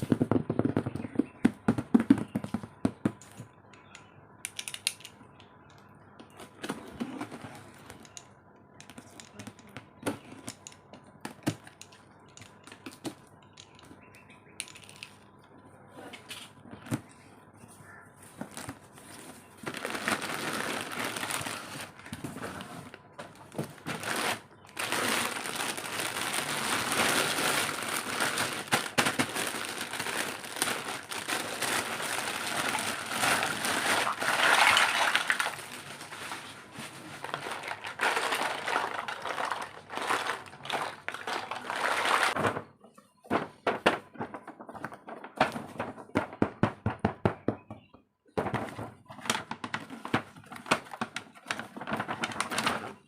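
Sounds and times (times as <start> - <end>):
plastic packaging crinkling: 18.5 - 42.4, 50.6 - 53.0.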